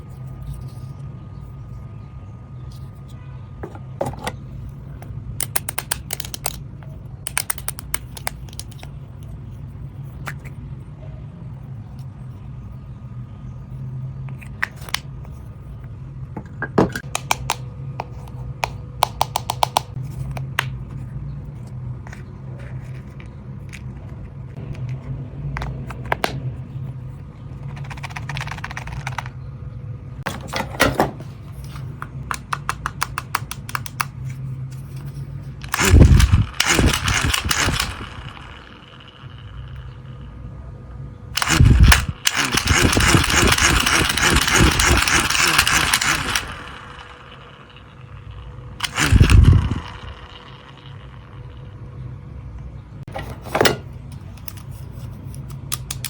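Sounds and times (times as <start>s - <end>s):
rapid clicks and taps: 5.4s - 6.6s, 7.3s - 8.8s, 18.6s - 20.8s, 27.7s - 29.4s, 32.0s - 34.2s
low hum: 34.1s - 55.3s.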